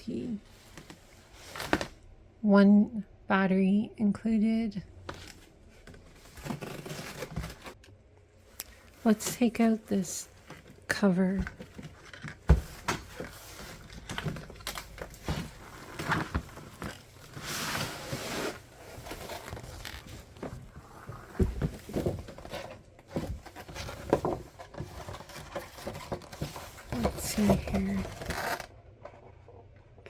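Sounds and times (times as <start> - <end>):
cardboard packaging rustling and scraping: 5.1 - 7.8, 11.4 - 28.7.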